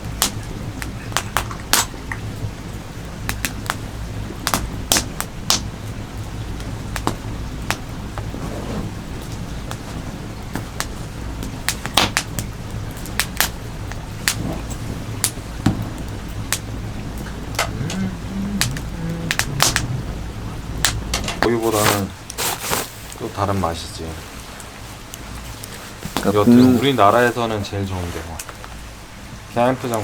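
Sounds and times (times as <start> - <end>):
campfire crackling and popping: 0.0 - 27.7, 28.3 - 30.0
low fire rumble: 0.0 - 30.0.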